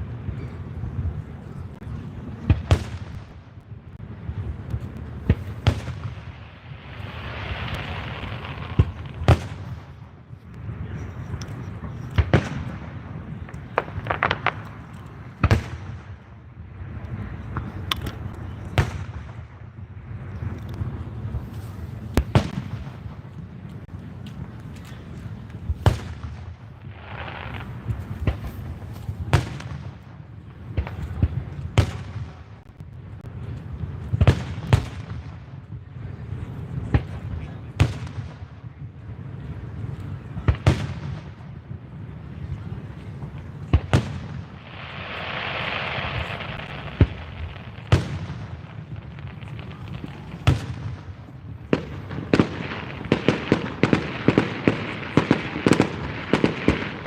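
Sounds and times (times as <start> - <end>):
fireworks bursting with sharp bangs: 0.0 - 57.0
low continuous rumble: 0.0 - 57.0
quick fireworks pops: 4.6 - 16.3, 20.3 - 35.8, 42.4 - 57.0.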